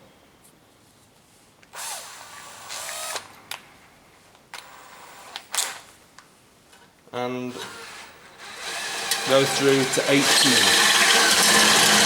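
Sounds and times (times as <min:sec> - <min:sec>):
electric drill through steel: 0:01.8 - 0:03.3, 0:07.5 - 0:12.0.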